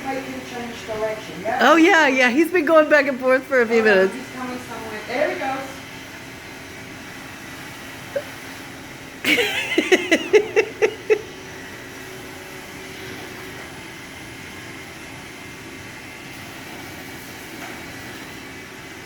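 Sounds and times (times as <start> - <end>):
person laughing: 9.3 - 11.3
robot vacuum humming: 9.3 - 19.0.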